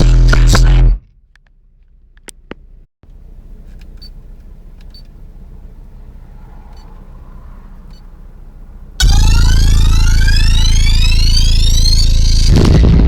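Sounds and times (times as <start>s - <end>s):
distorted bass sweep from subwoofers: 0.0s - 1.0s, 9.0s - 13.0s
low steady rumble: 0.0s - 13.0s.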